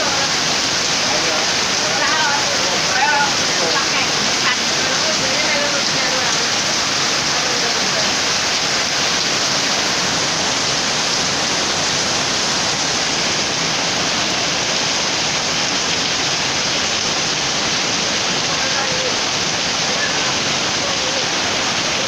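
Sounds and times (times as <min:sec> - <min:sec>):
heavy rain pouring: 0:00.0 - 0:22.0.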